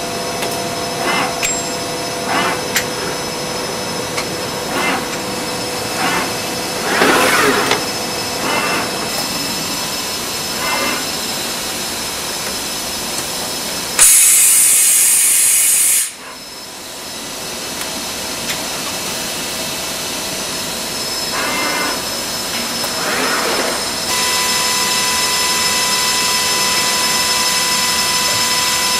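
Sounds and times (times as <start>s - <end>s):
grinder machine hum: 0.0s - 14.3s, 16.0s - 28.9s
grinding noise bursts: 4.5s - 11.4s
loud hiss: 8.5s - 16.2s.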